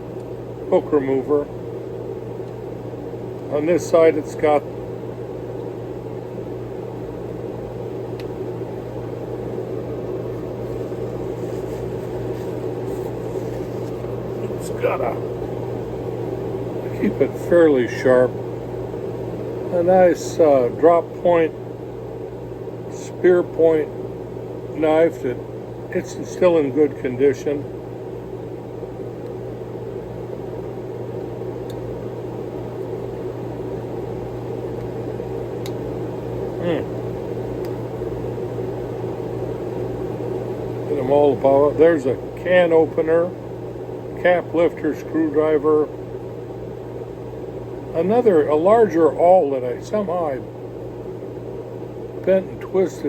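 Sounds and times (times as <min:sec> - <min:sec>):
steady mechanical hum: 0:00.0 - 0:53.0
appliance motor humming: 0:06.7 - 0:26.6.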